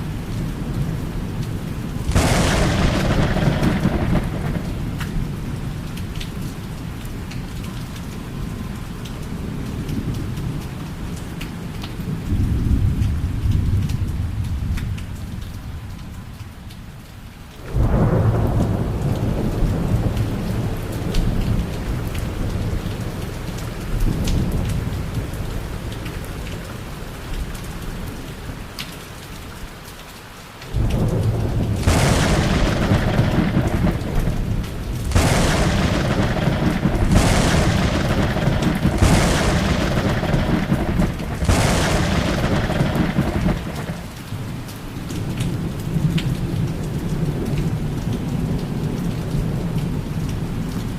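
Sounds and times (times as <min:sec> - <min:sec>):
steady rain: 0:00.0 - 0:50.9
sharp crackling thunder: 0:01.8 - 0:06.6, 0:17.6 - 0:25.6, 0:30.7 - 0:50.0
rumbling thunder: 0:02.0 - 0:05.8, 0:17.7 - 0:22.6, 0:30.7 - 0:44.6.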